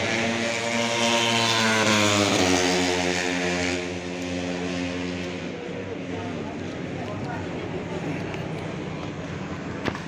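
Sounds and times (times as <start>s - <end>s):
motorcycle engine passing at high revs: 0.0s - 7.5s.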